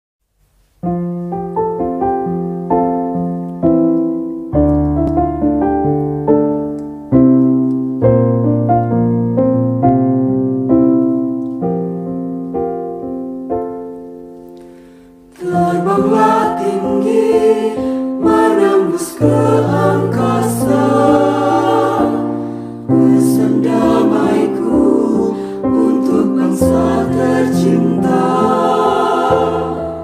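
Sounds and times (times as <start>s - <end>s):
piano chords: 0.8s - 30.0s
choir singing: 15.4s - 30.0s.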